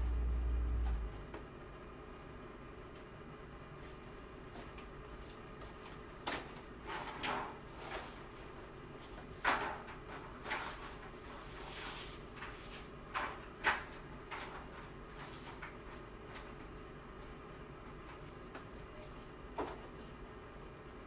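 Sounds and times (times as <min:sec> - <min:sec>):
kitchen knocks and clatters: 0:06.2 - 0:08.2, 0:09.2 - 0:11.1.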